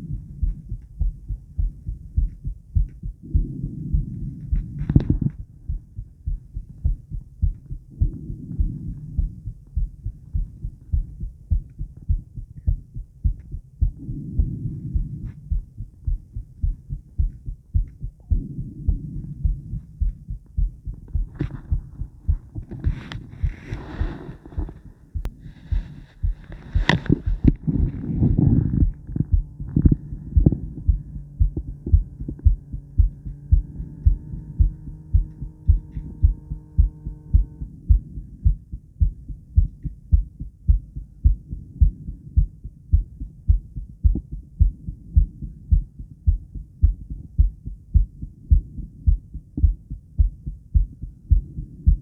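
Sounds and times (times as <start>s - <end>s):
heartbeat thumps: 0.0s - 52.0s
rough scraping noise: 22.7s - 24.9s.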